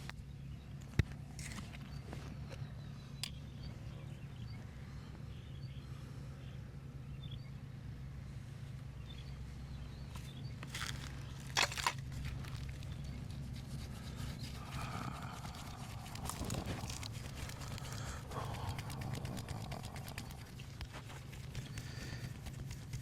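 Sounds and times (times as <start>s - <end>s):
steady low hum: 0.0s - 23.0s
hands rubbing skin: 12.3s - 23.0s.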